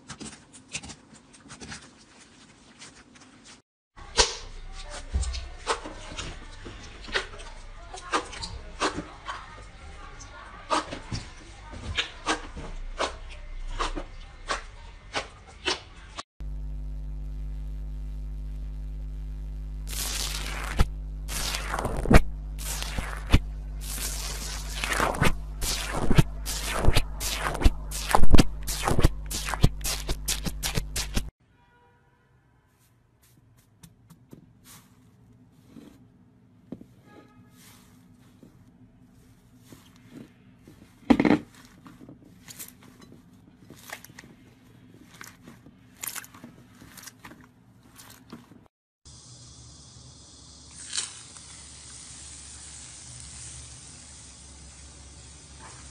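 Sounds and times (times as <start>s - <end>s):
steady low hum: 16.4s - 31.3s
slime crackling: 19.8s - 31.3s, 43.6s - 48.6s
slime squelching and popping: 43.6s - 48.4s.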